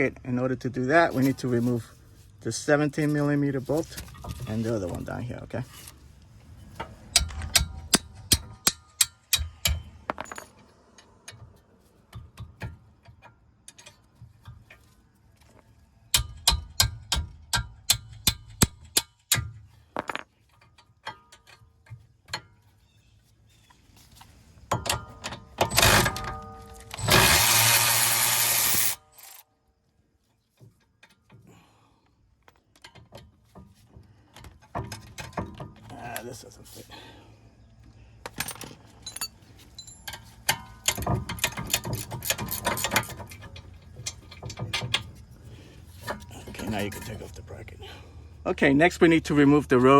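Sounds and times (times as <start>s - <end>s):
ratchet wrench clicking: 26.9s - 29.4s.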